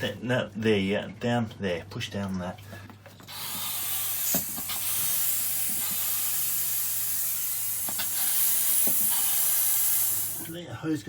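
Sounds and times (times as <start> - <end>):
pressurised air hissing: 3.2 - 10.6.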